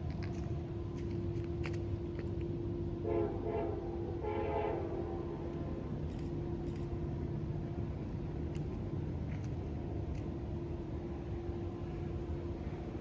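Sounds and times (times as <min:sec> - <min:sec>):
locomotive air horn blasts: 0:03.0 - 0:05.3.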